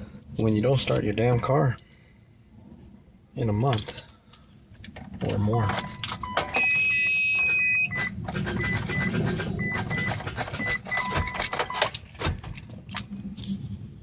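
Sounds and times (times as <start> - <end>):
short electronic beeps: 5.8 - 11.8
clicks and rattles: 8.0 - 13.6.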